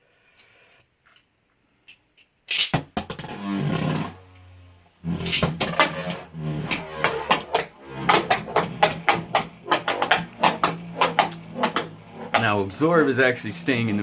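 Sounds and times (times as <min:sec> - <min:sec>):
spinning tops clacking: 0:02.5 - 0:02.8, 0:05.2 - 0:13.3
spinning tops whirring: 0:05.0 - 0:14.0.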